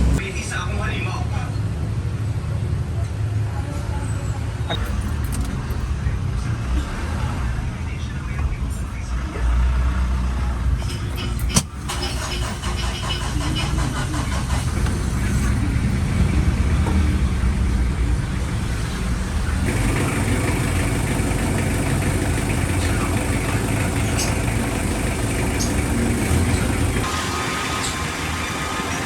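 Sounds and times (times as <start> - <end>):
car engine idling: 10.8 - 29.0.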